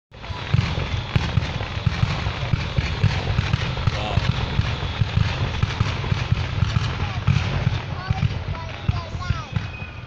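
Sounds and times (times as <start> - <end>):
fireworks booming: 0.1 - 10.0
crackling hiss: 0.2 - 10.0.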